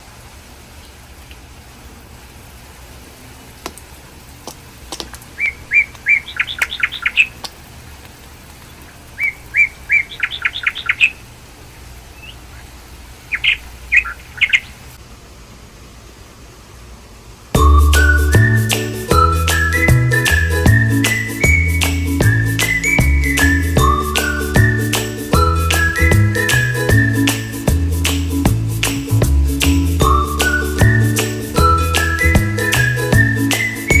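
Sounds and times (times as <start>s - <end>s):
bird chirps: 5.4s - 7.4s, 9.2s - 11.2s, 12.2s - 12.6s, 13.3s - 14.8s
bird singing: 5.4s - 7.4s, 9.2s - 11.2s, 13.3s - 14.8s.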